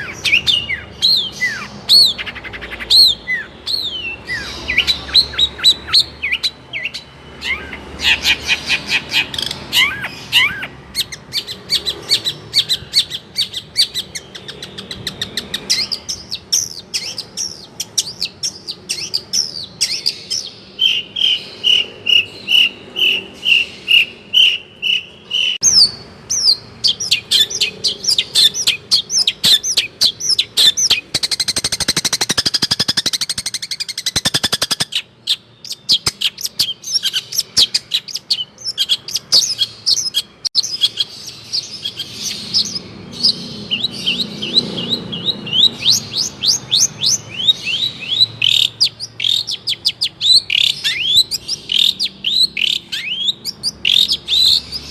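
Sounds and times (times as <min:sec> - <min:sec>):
bird song of chirps and whistles: 0:00.0 - 0:54.9.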